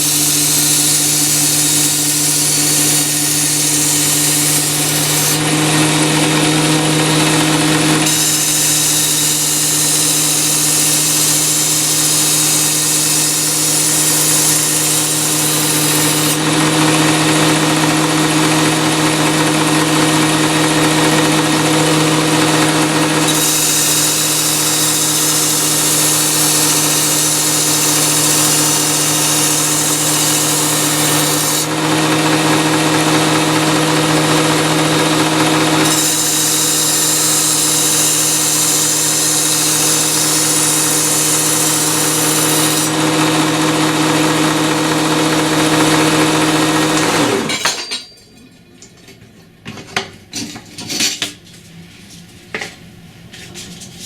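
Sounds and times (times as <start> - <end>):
knife grinding on abrasive belt: 0.0 - 5.6, 8.0 - 16.4, 22.6 - 31.8, 34.5 - 43.2
belt sharpener motor hum: 0.0 - 47.5.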